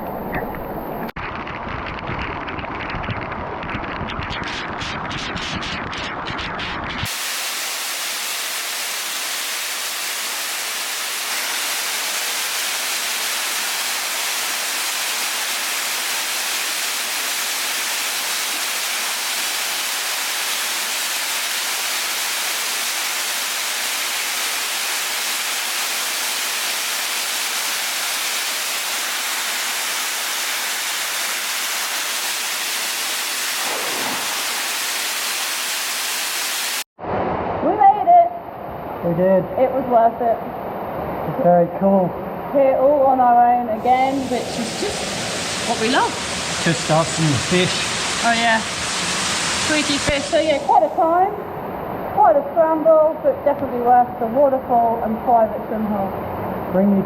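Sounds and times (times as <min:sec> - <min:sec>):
waterfall rushing: 0:07.1 - 0:36.9, 0:44.2 - 0:50.8.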